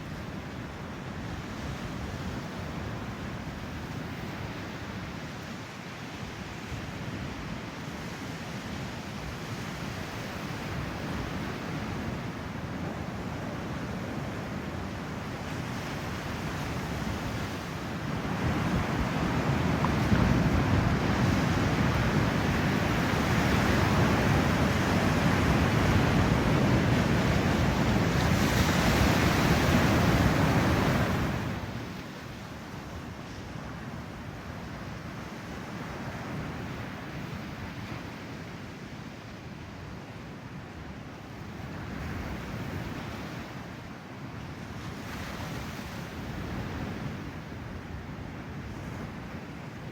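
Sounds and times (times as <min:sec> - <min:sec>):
wind buffeting microphone: 0:18.1 - 0:31.8.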